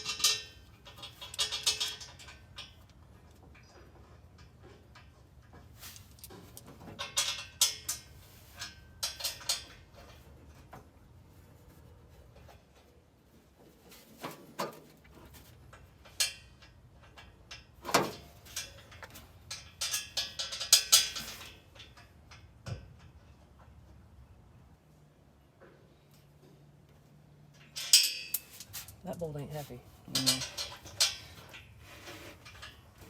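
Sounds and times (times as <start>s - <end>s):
metal tools clinking: 0.0s - 2.9s, 16.0s - 22.1s, 27.5s - 33.0s.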